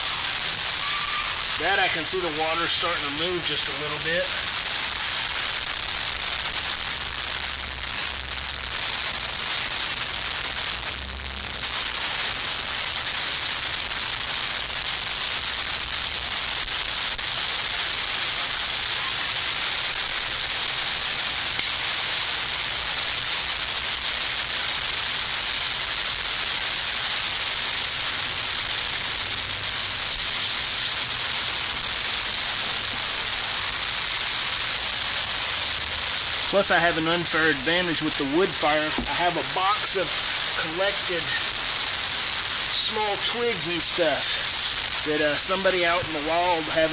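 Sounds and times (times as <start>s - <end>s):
camp stoves hissing: 0.0s - 46.9s.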